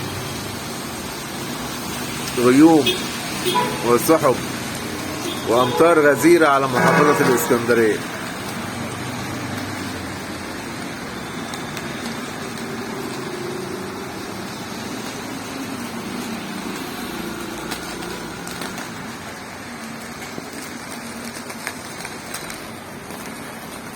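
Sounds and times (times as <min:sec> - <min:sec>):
rain hissing: 0:00.0 - 0:23.9
wet road noise: 0:00.0 - 0:23.9.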